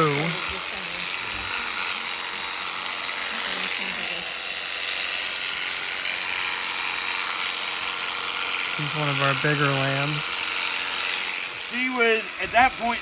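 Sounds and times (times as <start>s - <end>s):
electric shears clipping fleece: 0.0s - 13.0s.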